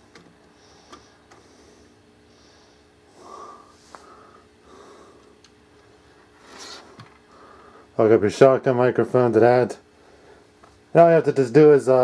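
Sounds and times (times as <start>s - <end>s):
person breathing through the nose: 0.5s - 5.4s.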